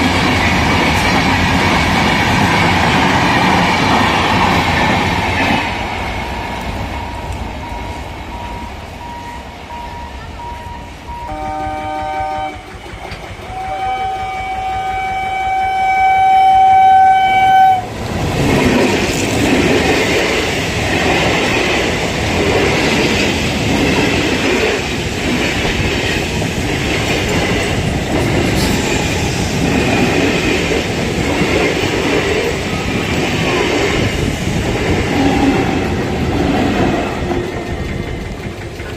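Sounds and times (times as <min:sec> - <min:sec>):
train rumbling past: 0:00.0 - 0:38.9
locomotive horn blast: 0:09.9 - 0:12.8, 0:13.5 - 0:17.9
wheels clacking over rail joints: 0:12.5 - 0:15.1, 0:18.0 - 0:38.9.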